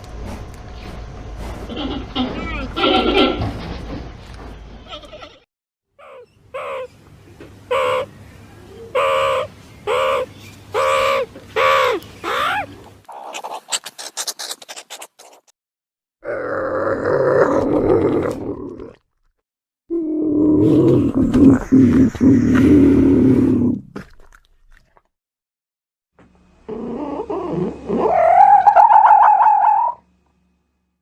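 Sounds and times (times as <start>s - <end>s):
harsh noisy animal call: 26.7s - 30.0s
animal calls rising and falling: 27.0s - 30.0s.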